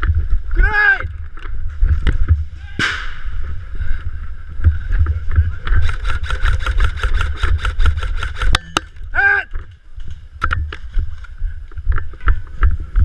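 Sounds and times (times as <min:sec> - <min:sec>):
wind rumble: 0:00.0 - 0:13.0
airsoft gun firing: 0:02.8 - 0:03.3.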